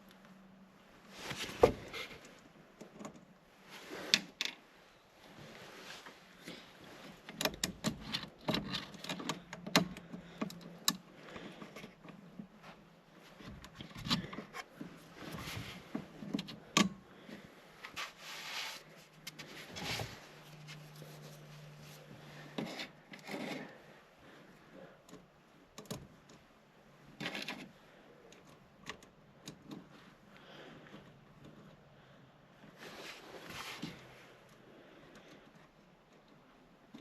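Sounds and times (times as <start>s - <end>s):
clicks and knocks of hand tools: 7.3s - 12.2s
scraping and rubbing noises: 17.7s - 24.1s, 32.7s - 34.4s.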